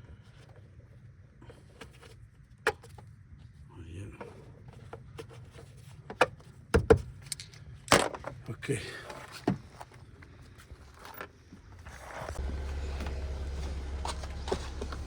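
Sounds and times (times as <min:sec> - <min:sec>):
low steady hum: 0:12.4 - 0:15.0.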